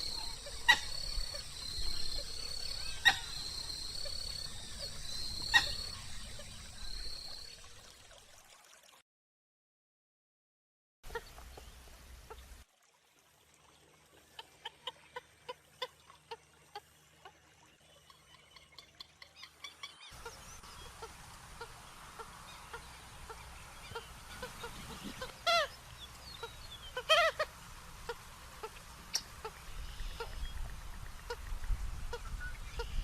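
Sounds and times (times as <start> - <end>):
bird clucking calls: 0.0 - 7.5, 18.6 - 33.0.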